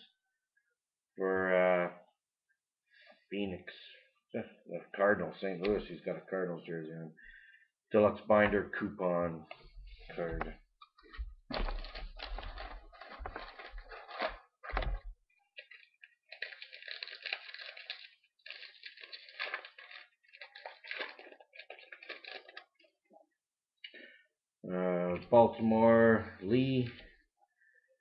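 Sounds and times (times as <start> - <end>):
foil wrapper tearing and crinkling: 11.5 - 22.9.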